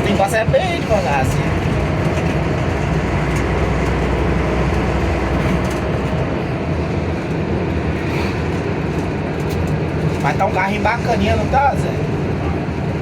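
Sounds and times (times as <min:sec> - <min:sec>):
bus diesel engine running: 0:00.0 - 0:13.0
road and body noise: 0:00.0 - 0:13.0.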